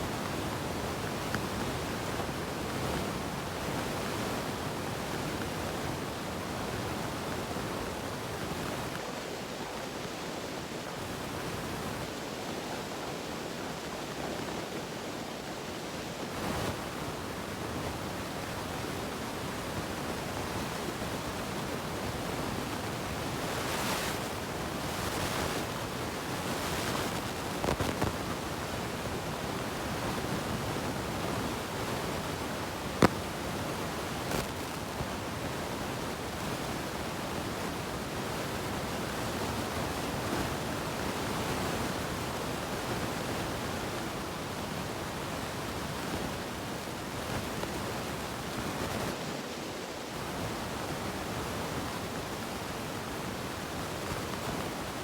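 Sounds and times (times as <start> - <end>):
faint handling sounds: 26.5 - 28.3, 34.1 - 35.1.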